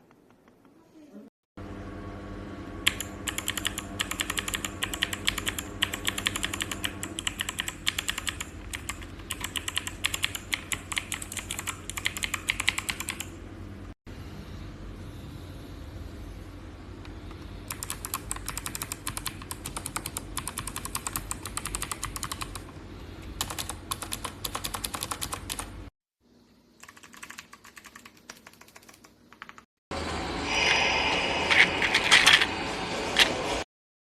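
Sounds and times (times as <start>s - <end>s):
mechanical keyboard typing: 2.8s - 13.4s, 17.7s - 22.7s, 23.4s - 25.7s, 26.8s - 29.7s.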